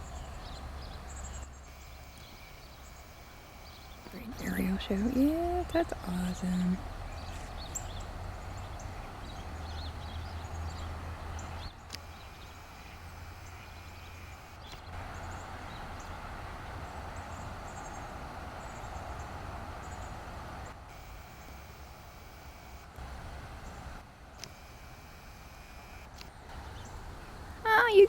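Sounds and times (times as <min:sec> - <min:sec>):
high bird chirps: 0:00.0 - 0:15.4.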